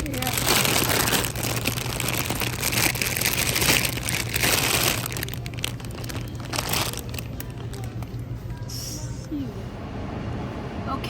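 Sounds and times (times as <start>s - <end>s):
crinkling handling noise: 0.0s - 8.7s.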